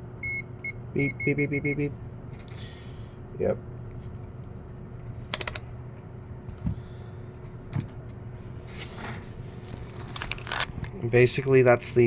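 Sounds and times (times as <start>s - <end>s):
faint steady hum: 0.0s - 12.0s
short scrape: 8.6s - 9.6s.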